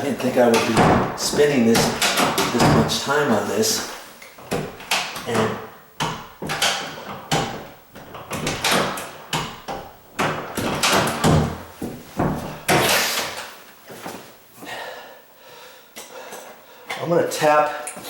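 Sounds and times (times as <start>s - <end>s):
door latch knocking and clicking: 0.5s - 3.0s, 4.4s - 11.6s.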